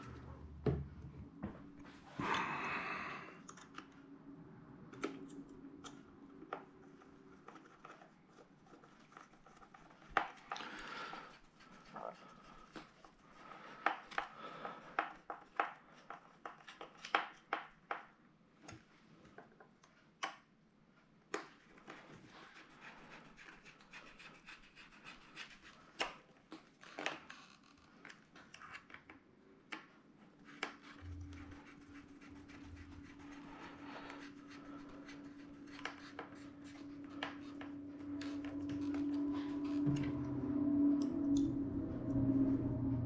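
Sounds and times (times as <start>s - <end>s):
steady low hum: 0.0s - 7.5s, 31.0s - 43.0s.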